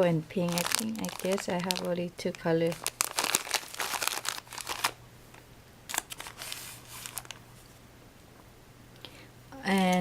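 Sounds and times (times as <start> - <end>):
packets rustling and clicking: 0.4 - 5.0, 5.9 - 7.4.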